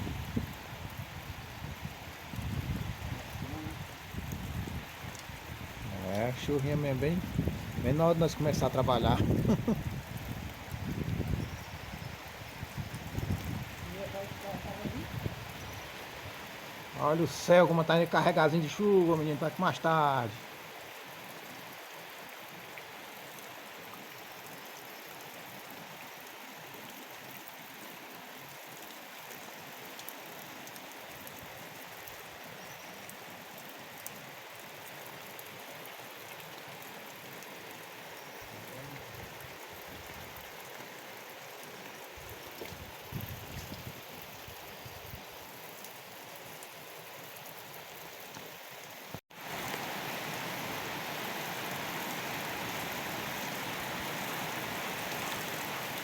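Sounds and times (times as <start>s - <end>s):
heavy rain falling: 0.0s - 11.5s, 12.8s - 20.5s, 35.9s - 44.0s, 49.3s - 56.0s.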